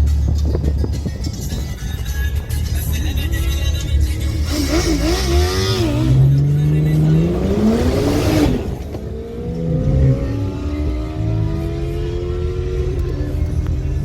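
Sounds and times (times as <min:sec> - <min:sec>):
car engine accelerating hard: 0:03.2 - 0:14.0.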